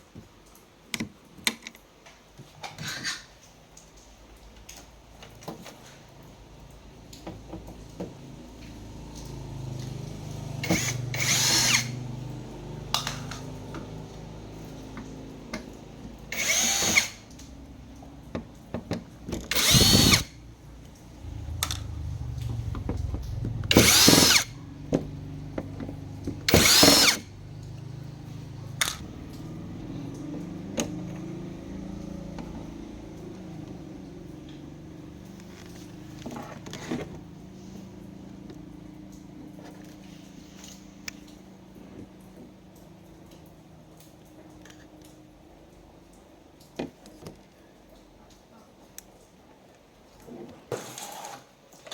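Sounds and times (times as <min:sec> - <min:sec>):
electric screwdriver whirring: 0:10.6 - 0:12.0, 0:16.3 - 0:17.2, 0:19.5 - 0:20.4, 0:23.4 - 0:24.5, 0:26.3 - 0:27.3.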